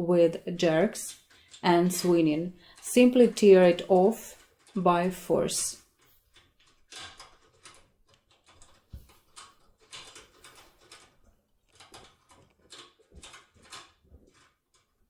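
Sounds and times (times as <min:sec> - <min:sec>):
metallic scraping and clicking in lock: 0:06.0 - 0:14.9.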